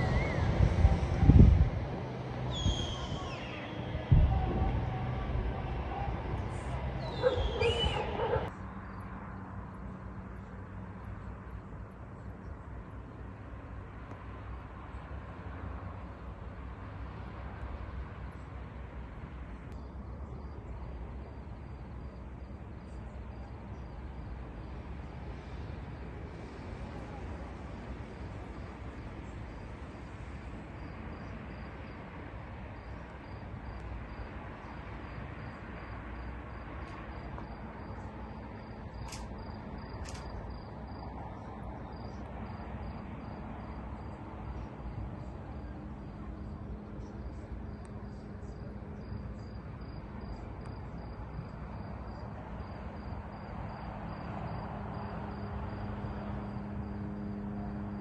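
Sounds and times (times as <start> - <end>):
open-air background noise: 0.0 - 58.0
crickets trilling: 2.4 - 9.5, 19.8 - 58.0.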